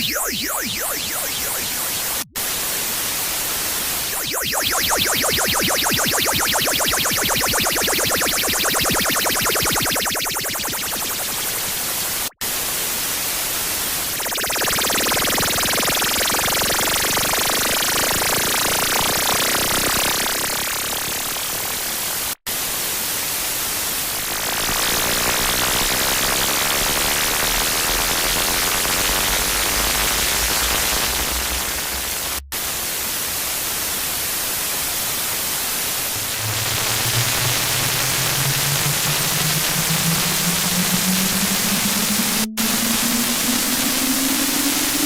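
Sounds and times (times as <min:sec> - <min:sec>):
harsh electronic static: 0:00.0 - 0:02.3, 0:04.1 - 0:12.4, 0:36.1 - 0:45.0
low rising tone: 0:36.1 - 0:45.0
low rumble: 0:36.2 - 0:43.0.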